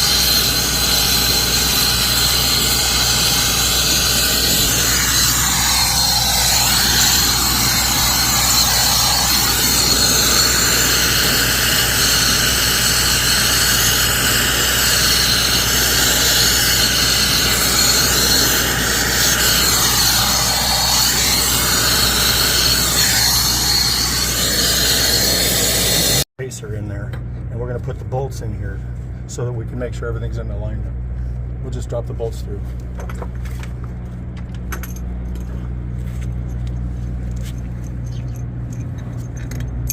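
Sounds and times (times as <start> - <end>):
gas torch flame roaring: 0.0 - 26.3.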